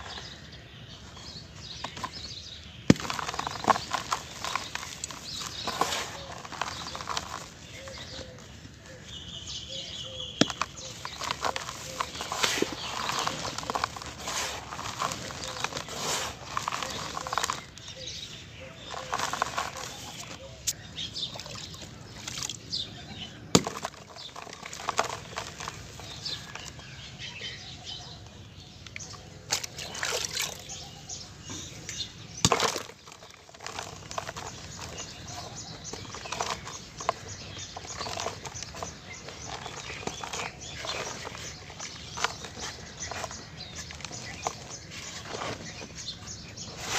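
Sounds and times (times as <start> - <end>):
dry cement crushing and crumbling: 0.0 - 27.6, 28.8 - 46.9.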